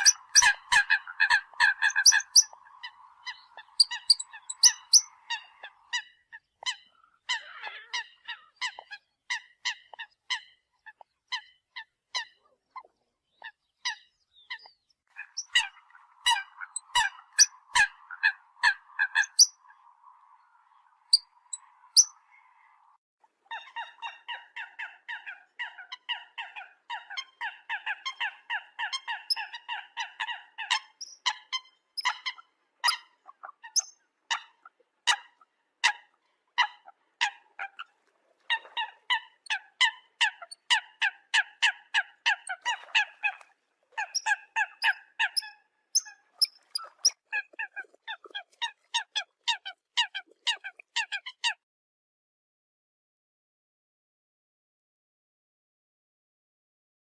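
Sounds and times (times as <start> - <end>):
coot honking calls: 0.0 - 8.9.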